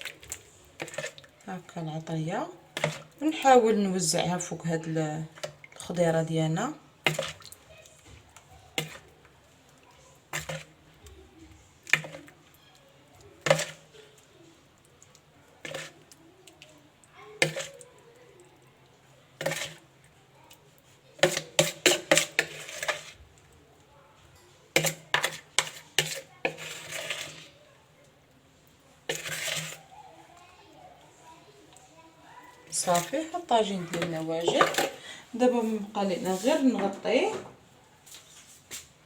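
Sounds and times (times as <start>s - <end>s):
utensil clinking against dishes: 24.8s - 27.4s, 32.6s - 35.2s.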